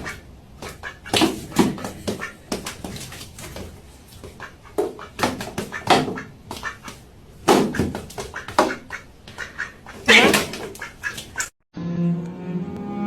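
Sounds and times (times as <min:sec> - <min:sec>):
animal short calls: 0:08.3 - 0:11.5.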